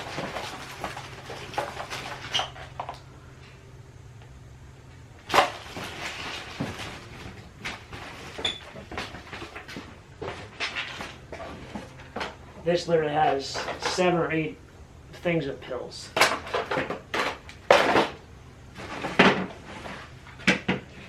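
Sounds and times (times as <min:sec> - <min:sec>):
objects knocking and rattling: 0:00.0 - 0:03.6, 0:05.2 - 0:12.6, 0:16.2 - 0:21.0
low hum: 0:00.0 - 0:13.1.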